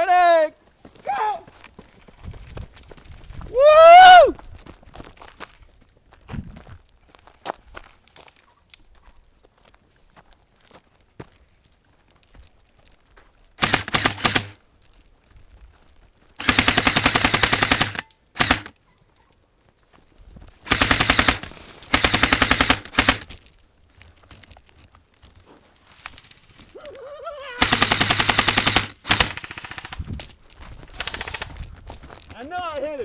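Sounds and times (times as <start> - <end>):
airsoft guns firing bursts: 13.6 - 14.6, 16.4 - 18.8, 20.6 - 23.4, 27.6 - 30.1, 30.9 - 31.6.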